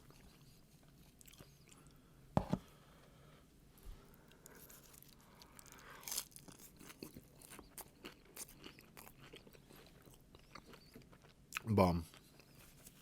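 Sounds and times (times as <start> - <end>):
crispy food chewing crunches: 0.0 - 2.0, 4.2 - 13.0.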